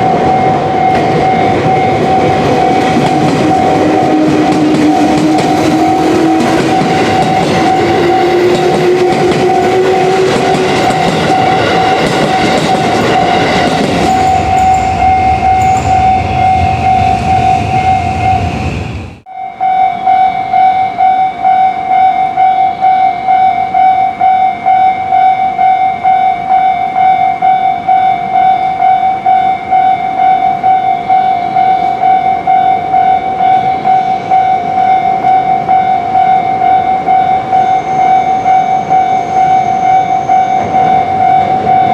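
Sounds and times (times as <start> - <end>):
train running noise: 0.0 - 19.3, 19.9 - 41.9
train whine: 0.0 - 41.9
level crossing bell ringing: 10.7 - 18.4.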